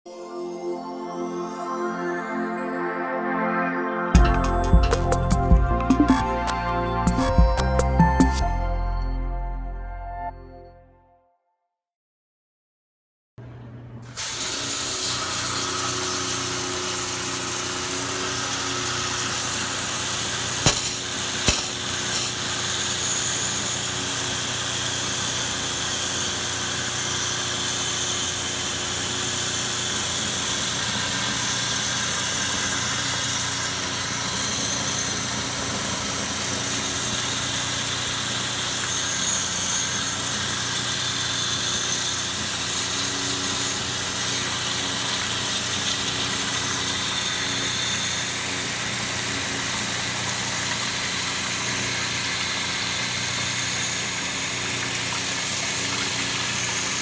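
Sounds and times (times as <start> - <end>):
pressure washer motor and pump: 14.0 - 57.0.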